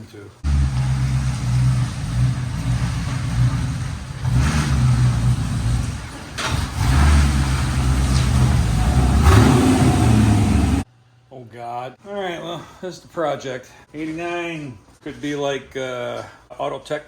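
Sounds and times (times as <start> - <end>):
misfiring car engine: 0.4 - 10.8.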